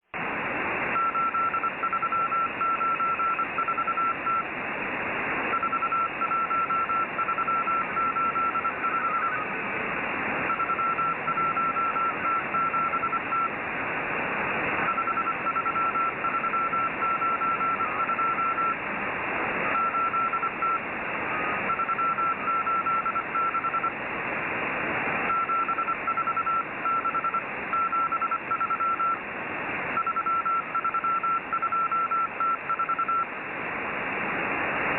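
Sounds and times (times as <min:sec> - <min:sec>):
radio static hiss: 0:00.1 - 0:34.9
morse code beeps: 0:01.0 - 0:04.4, 0:05.5 - 0:09.4, 0:10.5 - 0:13.5, 0:14.9 - 0:18.8, 0:19.8 - 0:20.8, 0:21.7 - 0:23.9, 0:25.3 - 0:29.2, 0:30.0 - 0:33.3.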